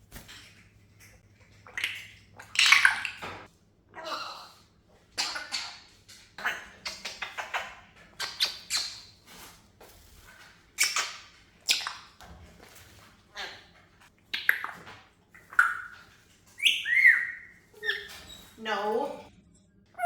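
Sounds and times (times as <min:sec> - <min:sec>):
parrot whistle: 0:16.6 - 0:18.1.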